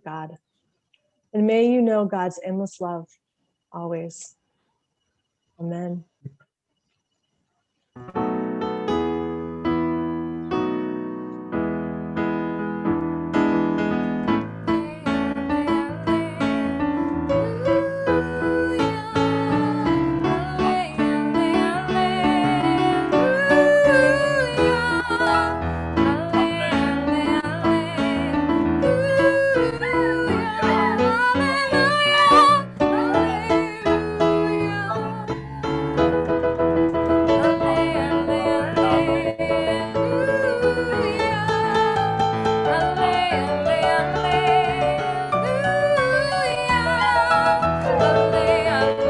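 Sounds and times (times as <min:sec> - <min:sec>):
piano chords: 0:08.0 - 0:49.0
person singing: 0:17.4 - 0:36.5, 0:37.3 - 0:49.0.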